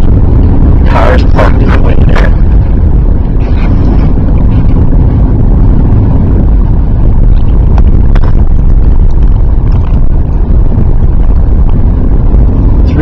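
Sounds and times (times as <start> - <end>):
car driving interior rumble: 0.0 - 13.0.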